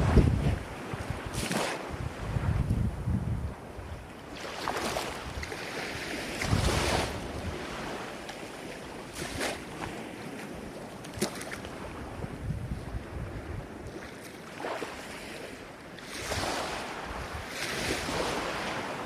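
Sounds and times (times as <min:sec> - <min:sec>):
water splashes: 0:00.0 - 0:02.0, 0:04.3 - 0:11.9
ocean waves breaking: 0:00.0 - 0:19.0
wind rumbling on microphone: 0:00.0 - 0:19.0.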